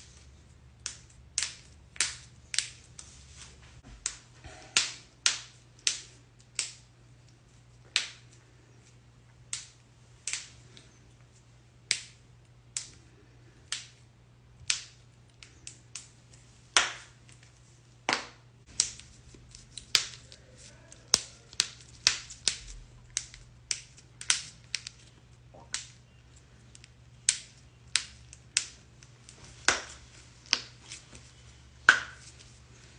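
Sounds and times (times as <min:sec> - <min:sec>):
faint steady hum: 0:00.0 - 0:32.9
knuckles cracking: 0:18.7 - 0:31.2.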